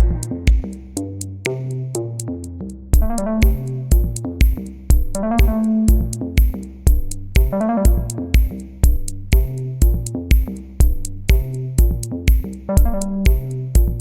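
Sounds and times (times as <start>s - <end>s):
drum machine beat: 0.0s - 2.3s, 3.0s - 14.0s
bass and synth chords: 0.0s - 14.0s
instrumental electronic music: 0.0s - 14.0s.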